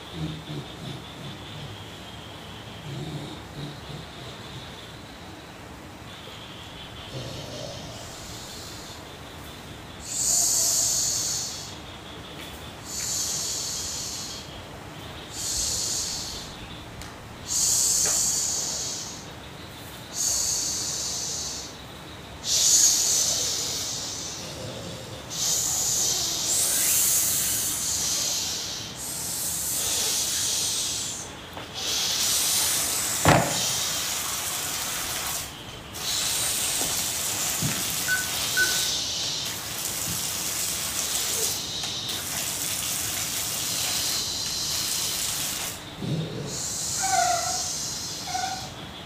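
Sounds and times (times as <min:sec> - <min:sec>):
person hissing through teeth: 0:25.3 - 0:45.8
sharp knock: 0:33.2 - 0:33.7.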